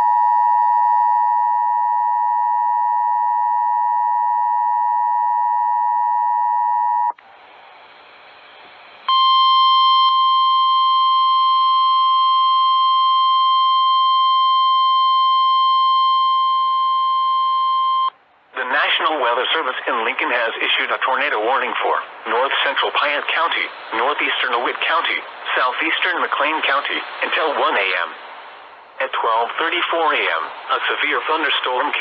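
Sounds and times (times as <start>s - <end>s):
steady warning alarm tone: 9.1s - 18.1s
two-tone alarm signal: 9.1s - 18.1s.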